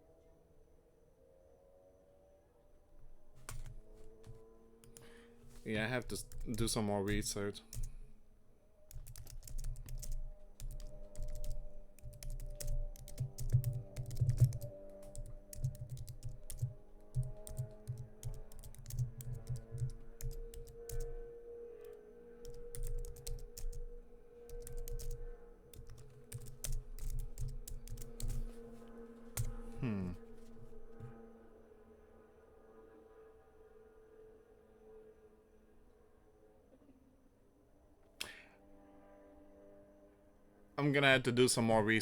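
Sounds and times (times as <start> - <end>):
faint background music: 1.3 - 42.0
keyboard typing: 3.3 - 8.2, 8.9 - 21.2, 22.4 - 28.7, 29.3 - 31.2.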